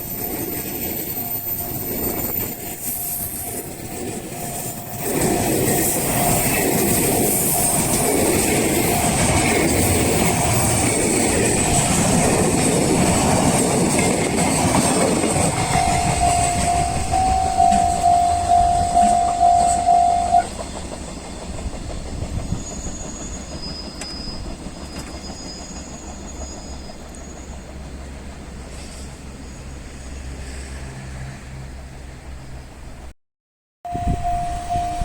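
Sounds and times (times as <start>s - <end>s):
crossing warning alarm ringing: 0.0s - 21.0s, 33.9s - 35.0s
train wheels clattering: 0.0s - 29.2s.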